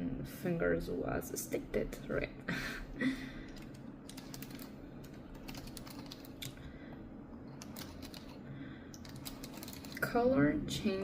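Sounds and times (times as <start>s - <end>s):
fingernails typing on keyboard: 3.5s - 6.6s, 7.6s - 8.4s, 9.0s - 10.1s.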